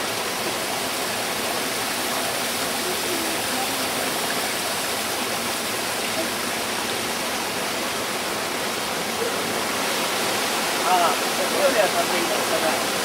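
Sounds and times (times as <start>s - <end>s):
stream water rushing: 0.0s - 13.0s.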